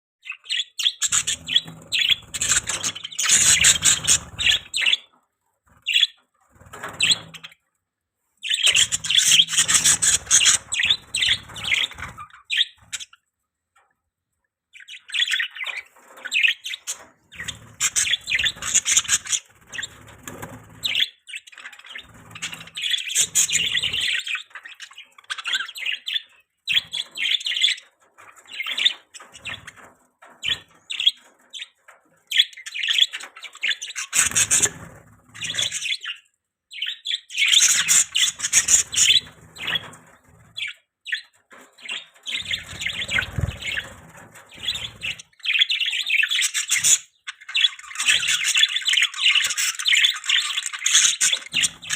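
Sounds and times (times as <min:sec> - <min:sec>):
budgerigars chirping: 0:00.2 - 0:05.1, 0:08.4 - 0:13.2, 0:14.8 - 0:29.8, 0:30.4 - 0:51.9.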